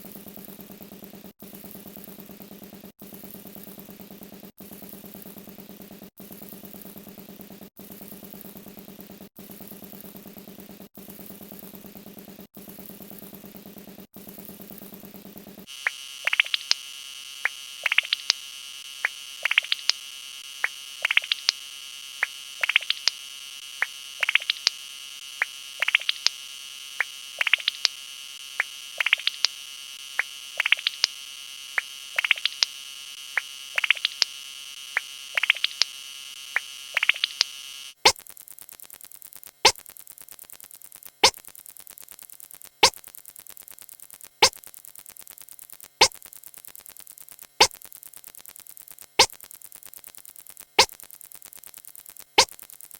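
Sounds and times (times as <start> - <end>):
buzzing electronic drone: 15.6 - 38.0
sharp electronic clicks: 15.7 - 16.8, 17.4 - 18.4, 19.0 - 21.6, 22.2 - 23.2, 23.8 - 24.8, 25.4 - 26.4, 27.0 - 28.0, 28.6 - 29.6, 30.2 - 31.2, 31.8 - 38.2
electronic chirps: 29.0 - 29.5, 30.6 - 31.1, 35.4 - 35.8.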